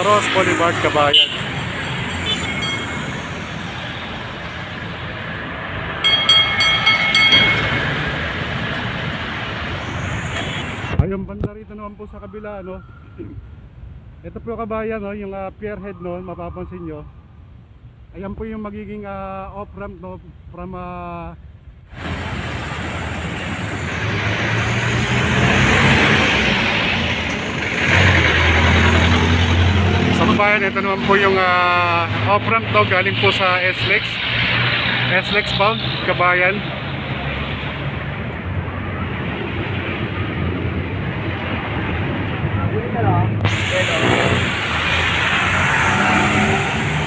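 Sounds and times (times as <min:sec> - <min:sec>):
heavy vehicle engine hum: 0:00.0 - 0:11.0, 0:21.9 - 0:33.1, 0:36.6 - 0:47.0
street traffic: 0:00.0 - 0:47.0.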